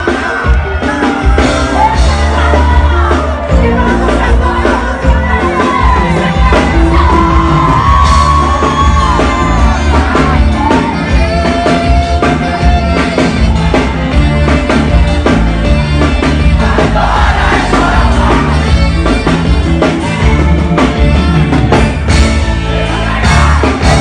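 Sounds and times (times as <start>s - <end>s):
live band music: 0.0s - 24.0s
crowd shouting: 5.1s - 14.0s, 16.3s - 24.0s.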